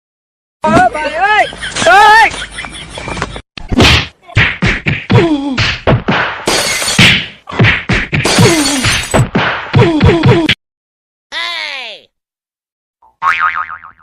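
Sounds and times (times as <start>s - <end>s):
cartoon whack and smash effects: 3.7s - 10.6s.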